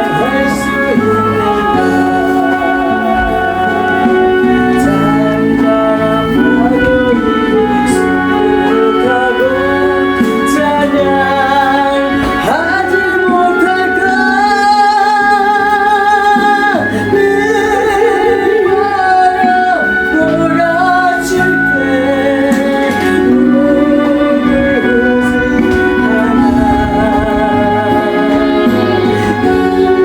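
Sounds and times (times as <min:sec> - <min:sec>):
gospel song with vibrato melody: 0:00.0 - 0:30.0.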